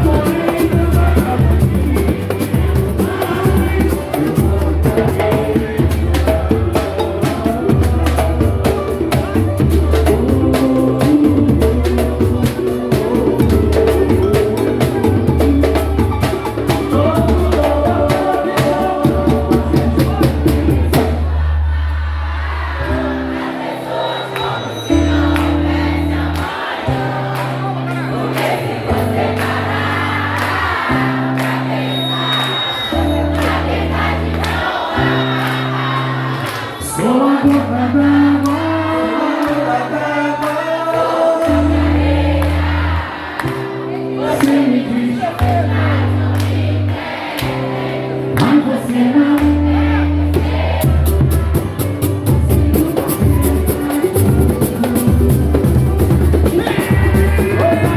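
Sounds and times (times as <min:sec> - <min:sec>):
dense percussion: 0:00.0 - 0:21.8, 0:50.4 - 0:57.9
group singing: 0:00.0 - 0:57.9
held bass notes: 0:49.4 - 0:57.9.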